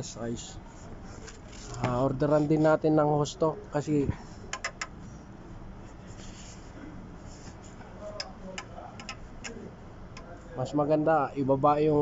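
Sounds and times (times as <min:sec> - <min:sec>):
faint background hum: 0:00.0 - 0:12.0
light clicks and taps: 0:08.1 - 0:10.3.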